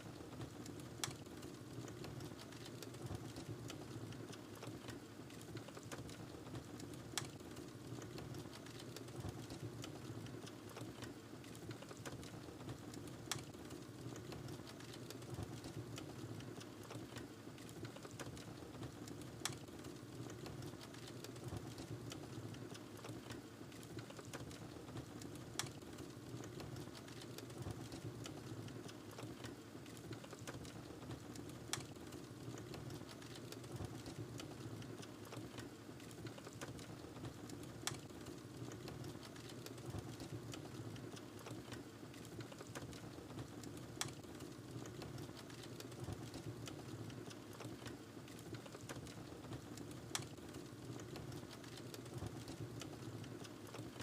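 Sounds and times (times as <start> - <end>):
fire crackling: 0.0 - 53.9.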